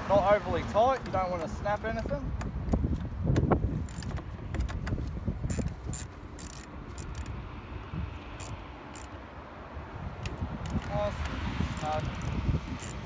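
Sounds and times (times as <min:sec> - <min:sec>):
ratchet clicking: 0:03.8 - 0:07.4, 0:08.2 - 0:09.2, 0:10.2 - 0:13.0.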